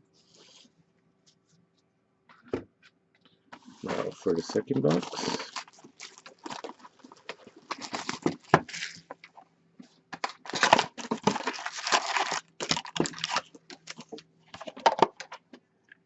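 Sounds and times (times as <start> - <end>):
plastic wrapping tearing and crinkling: 3.7 - 9.4, 10.2 - 14.8.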